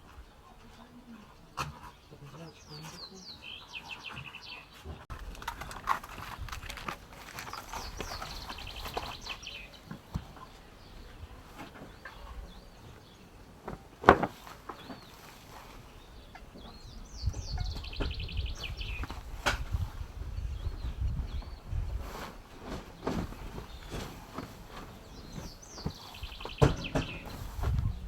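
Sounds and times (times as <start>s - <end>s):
songbird singing with trill: 1.9s - 4.8s, 7.4s - 13.5s, 15.9s - 22.0s, 23.5s - 28.0s.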